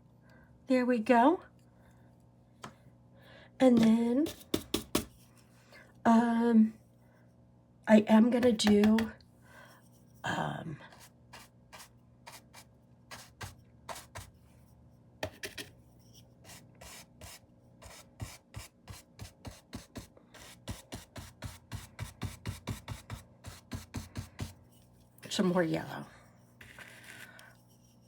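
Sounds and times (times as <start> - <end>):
paintbrush scrubbing: 10.9 - 14.3, 20.4 - 28.0.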